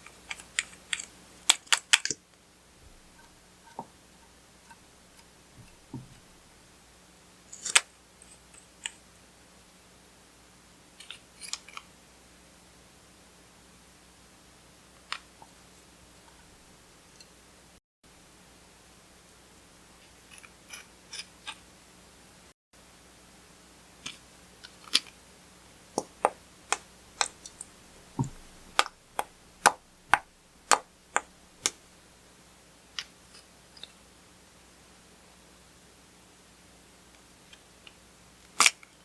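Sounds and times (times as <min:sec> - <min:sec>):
slime popping and clicking: 0:28.2 - 0:31.8.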